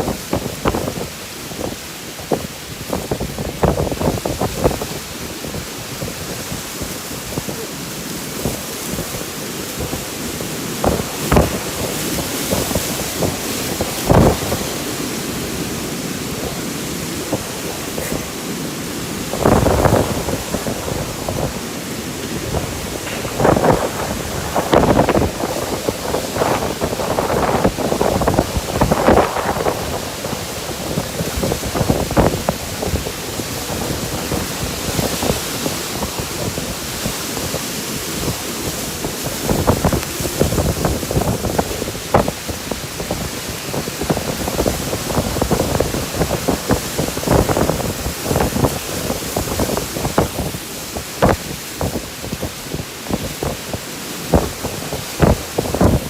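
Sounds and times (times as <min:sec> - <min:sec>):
strong wind blowing: 0:00.0 - 0:56.0
wind buffeting microphone: 0:00.0 - 0:56.0.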